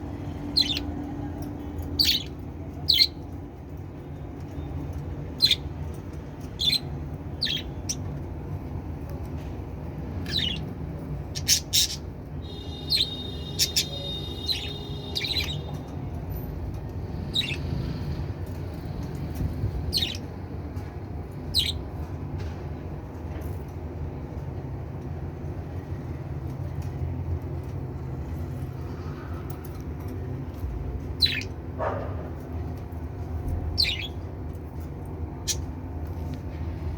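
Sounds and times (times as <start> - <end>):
budgerigars chirping: 0.5 - 0.8, 10.3 - 10.7, 11.4 - 15.7, 19.9 - 20.2, 31.2 - 31.5, 33.8 - 34.2.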